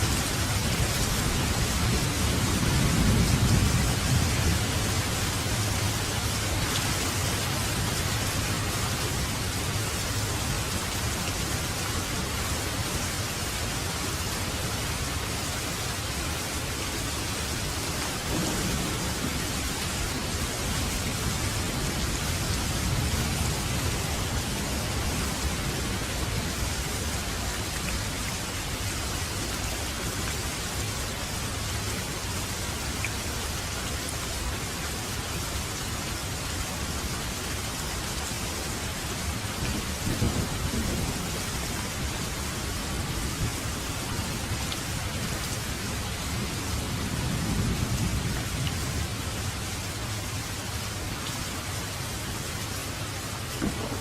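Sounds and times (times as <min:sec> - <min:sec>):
steady rain: 0:00.0 - 0:54.0
low thunder rumbling: 0:00.2 - 0:09.9, 0:18.1 - 0:27.8, 0:39.4 - 0:49.4, 0:53.5 - 0:54.0.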